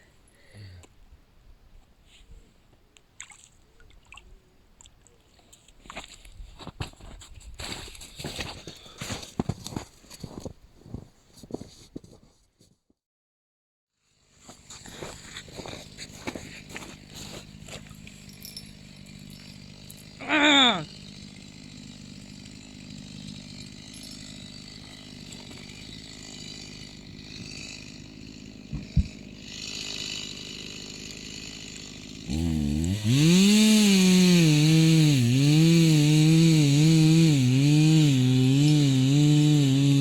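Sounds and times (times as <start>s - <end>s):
small gas engine: 14.2s - 40.0s.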